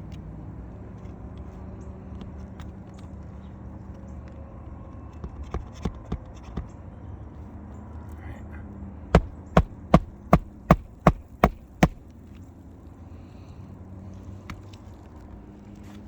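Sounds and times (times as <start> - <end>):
hammer tapping and striking nail: 5.2 - 6.7, 9.2 - 12.1.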